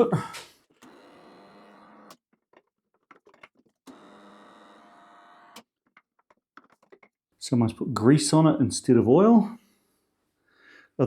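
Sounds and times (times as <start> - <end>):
electric drive humming: 0.8 - 2.2, 3.9 - 5.6.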